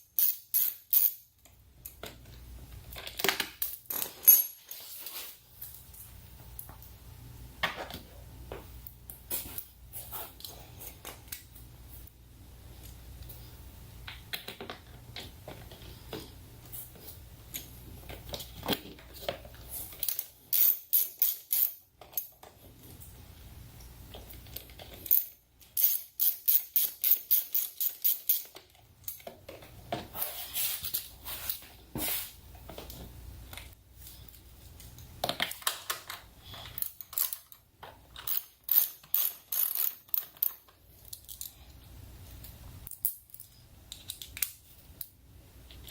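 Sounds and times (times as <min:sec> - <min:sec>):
hand ratchet clicking: 0:25.0 - 0:28.6, 0:38.2 - 0:40.6.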